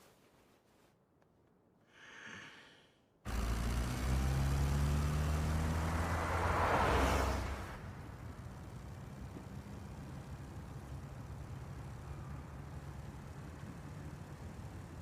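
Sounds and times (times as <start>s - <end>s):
vehicle driving past: 3.3s - 15.0s.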